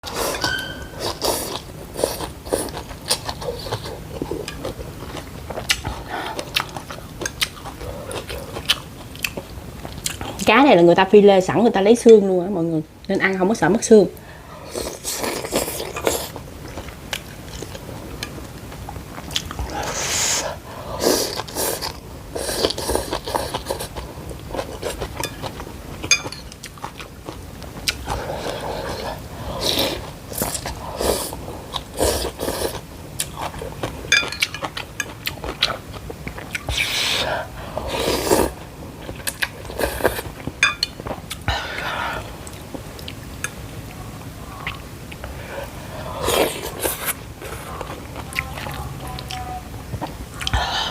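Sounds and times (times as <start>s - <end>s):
wet chewing: 0.0s - 10.4s, 21.2s - 37.2s.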